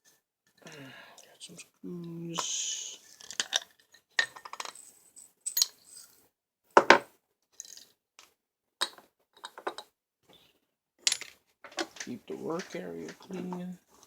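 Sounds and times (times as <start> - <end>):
metal parts clicking and clinking: 4.2 - 4.9, 5.5 - 6.1, 7.6 - 7.9, 11.1 - 13.6.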